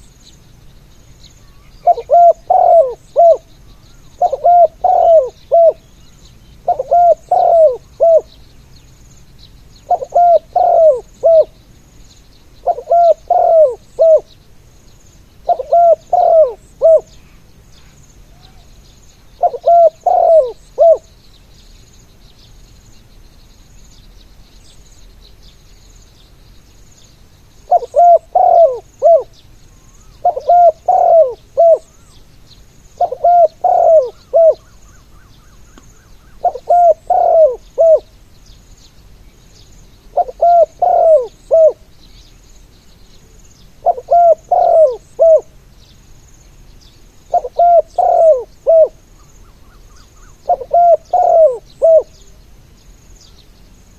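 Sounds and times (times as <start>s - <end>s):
dove cooing: 1.8s - 6.0s, 6.6s - 8.4s, 9.8s - 11.6s, 12.6s - 14.3s, 15.4s - 18.8s, 19.4s - 21.1s, 27.7s - 32.2s, 33.0s - 38.1s, 40.1s - 41.9s, 43.8s - 45.6s, 47.3s - 52.3s.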